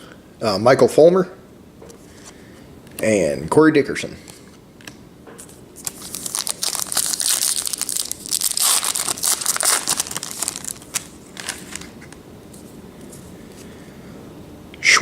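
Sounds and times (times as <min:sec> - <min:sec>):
foil wrapper tearing and crinkling: 0:05.8 - 0:12.0.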